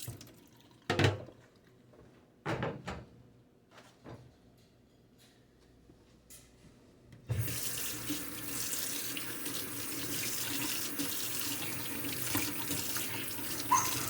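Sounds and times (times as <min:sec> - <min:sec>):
water running into sink: 0:00.0 - 0:01.2, 0:07.3 - 0:14.0.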